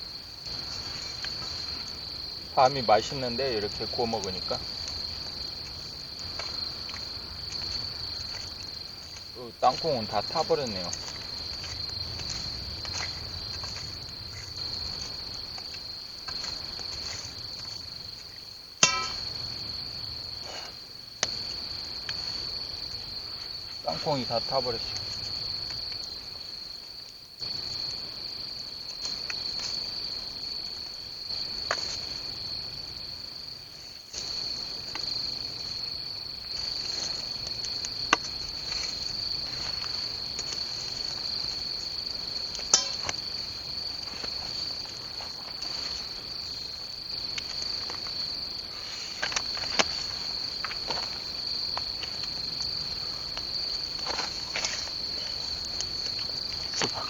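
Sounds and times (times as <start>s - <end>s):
crickets chirping: 0.0s - 57.0s
campfire popping: 0.4s - 26.4s, 36.4s - 46.4s.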